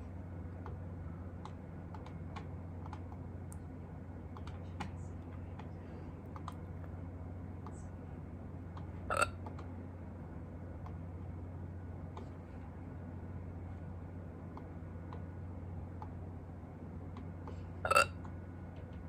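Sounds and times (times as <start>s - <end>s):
steady low hum: 0.0s - 19.0s
person hiccuping: 9.1s - 9.4s, 17.9s - 18.2s.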